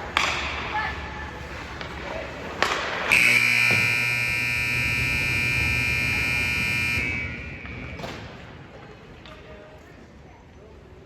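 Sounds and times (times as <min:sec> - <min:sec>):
scoreboard buzzer blast: 0:03.1 - 0:08.0.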